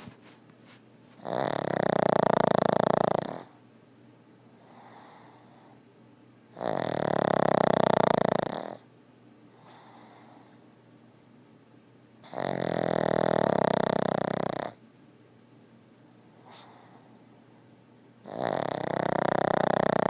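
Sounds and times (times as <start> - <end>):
dog snoring loudly: 1.2 - 3.6, 6.5 - 8.8, 12.2 - 14.8, 16.4 - 17.0, 18.2 - 20.0
faint breath out: 9.6 - 10.7, 16.4 - 17.3.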